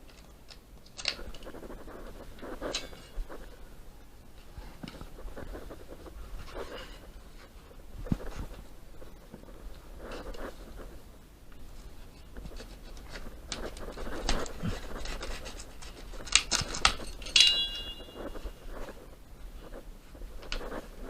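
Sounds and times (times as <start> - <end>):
tools scraping and knocking: 1.0 - 3.6, 12.5 - 19.0
sharp metallic clink: 17.2 - 18.4.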